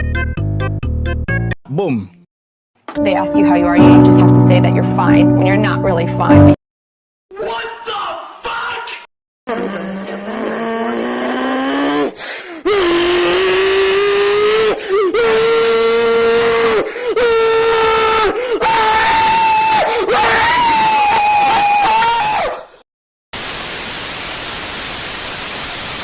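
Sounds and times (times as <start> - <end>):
man screaming: 12.7 - 22.7.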